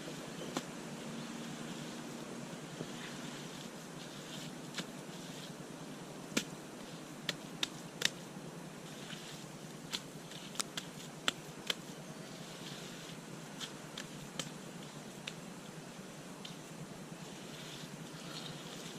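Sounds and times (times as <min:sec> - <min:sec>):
steady background hiss: 0:00.0 - 0:18.9
sharp clicks and snaps of sticks: 0:07.2 - 0:08.2.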